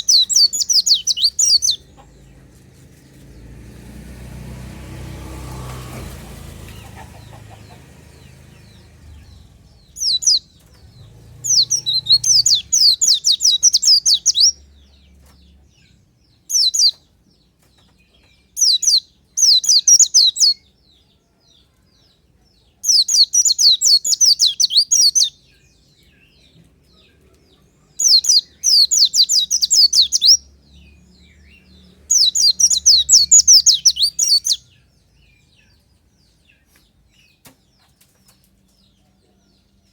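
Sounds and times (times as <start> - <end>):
bird twittering: 0.0 - 2.2, 6.7 - 14.9, 16.5 - 17.0, 18.6 - 20.6, 22.9 - 25.6, 27.9 - 34.9.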